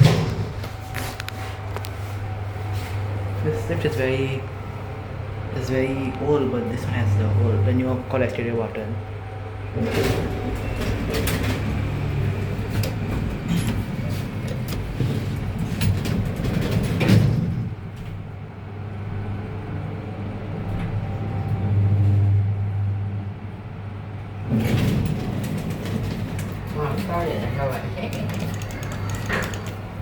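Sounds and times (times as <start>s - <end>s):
elevator knocks and clunk: 0.0s - 0.9s, 12.7s - 18.3s
elevator drive humming: 0.0s - 30.0s.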